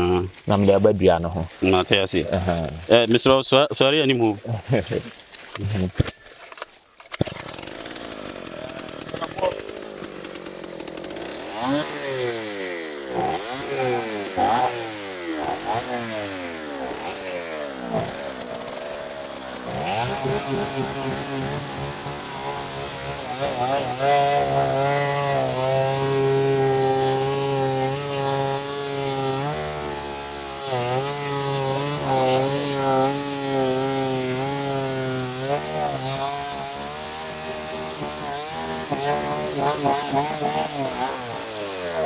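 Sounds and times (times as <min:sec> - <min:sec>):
chainsaw engine revving: 0:07.1 - 0:42.0.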